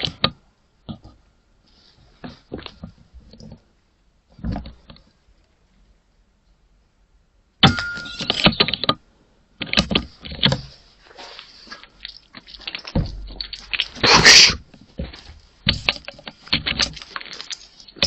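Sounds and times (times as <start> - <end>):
clicking and rattling: 9.6 - 18.0.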